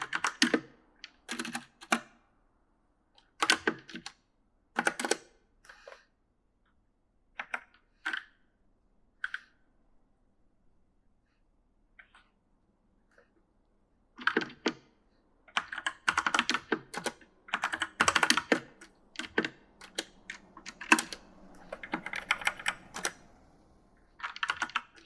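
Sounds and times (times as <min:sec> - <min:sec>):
mechanical keyboard clicks: 0:00.0 - 0:02.1, 0:15.5 - 0:23.6, 0:24.2 - 0:25.0.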